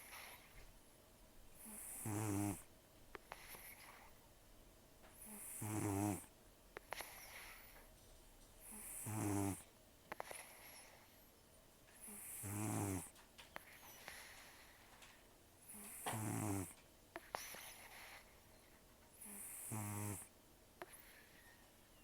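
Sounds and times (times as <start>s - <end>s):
cat snoring: 0.0s - 0.6s, 1.6s - 4.1s, 5.2s - 7.8s, 8.6s - 11.2s, 12.0s - 14.9s, 15.6s - 18.4s, 19.2s - 21.5s.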